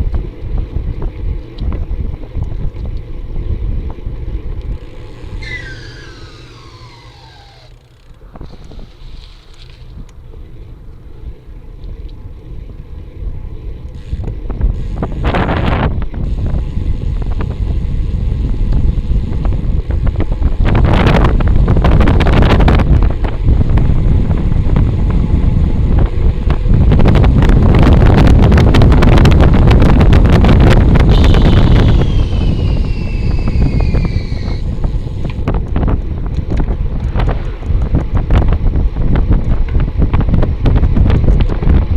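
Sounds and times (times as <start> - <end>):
road noise: 0.0 - 41.9
wind buffeting microphone: 0.0 - 41.9
high thin descending whine: 4.7 - 9.9, 30.6 - 35.4.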